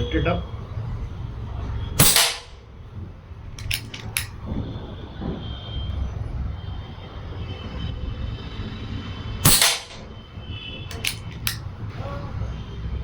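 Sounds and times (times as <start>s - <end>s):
air rifle shot crack: 2.0s - 2.6s, 9.5s - 10.2s
short clicks: 3.6s - 4.4s, 10.9s - 11.7s.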